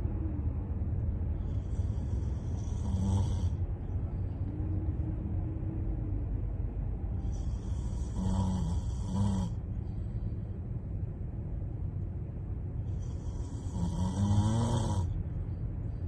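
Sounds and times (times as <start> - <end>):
low rumble: 0.0 - 16.0
person snoring: 1.5 - 3.6, 7.3 - 9.6, 12.9 - 15.2.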